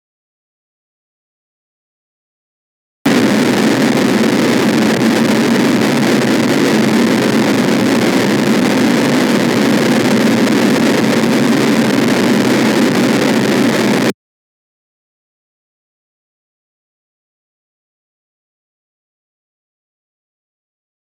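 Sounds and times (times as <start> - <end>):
dense distorted noise wall: 3.1 - 14.2.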